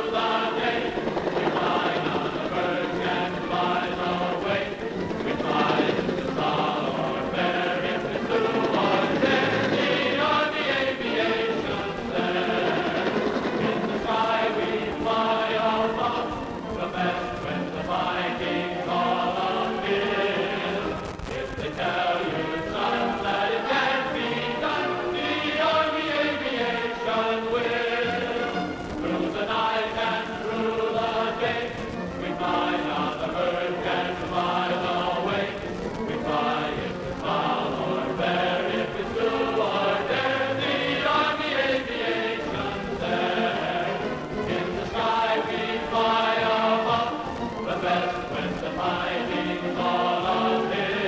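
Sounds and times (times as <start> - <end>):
choir singing: 0.0 - 51.0.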